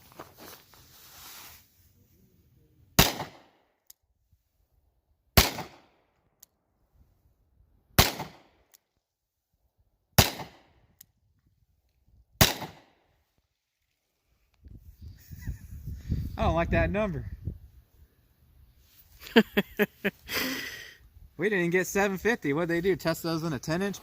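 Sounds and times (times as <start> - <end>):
revolver shots: 8.0 - 8.5.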